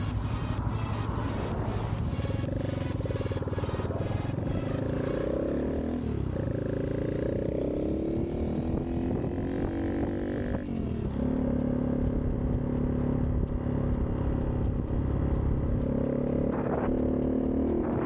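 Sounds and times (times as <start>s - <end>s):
motorbike engine revving: 0.0s - 18.0s.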